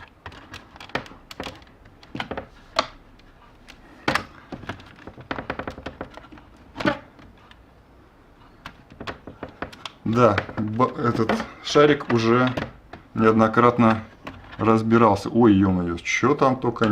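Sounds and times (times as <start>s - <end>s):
plastic parts clicking and tapping: 0.0s - 7.6s, 8.4s - 14.7s, 16.6s - 16.9s.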